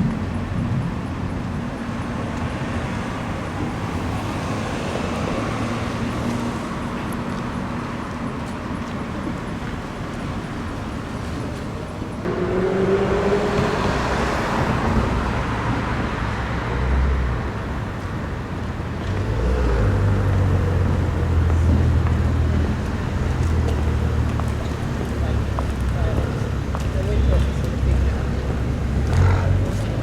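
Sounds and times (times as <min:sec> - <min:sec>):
cars passing: 0:00.0 - 0:30.0
low engine rumble: 0:00.0 - 0:30.0
rising engine tone: 0:12.2 - 0:17.2.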